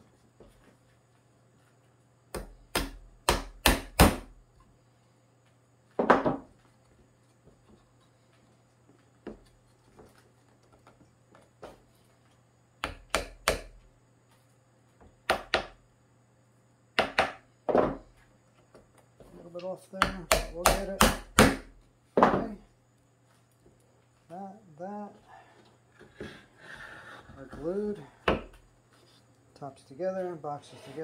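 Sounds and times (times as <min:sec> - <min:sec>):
sharp knocks on wood: 0:02.3 - 0:04.3, 0:15.3 - 0:15.8, 0:17.0 - 0:18.0.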